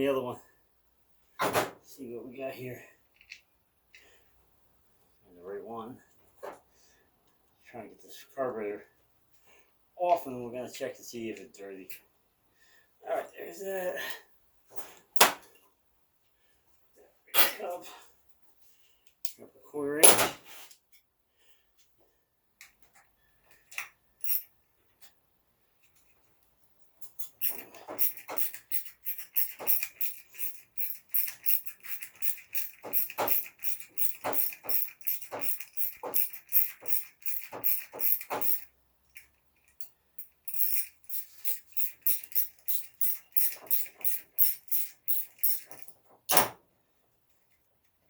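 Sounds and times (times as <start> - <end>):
ratchet wrench clicking: 27.1 - 38.7, 39.7 - 45.9.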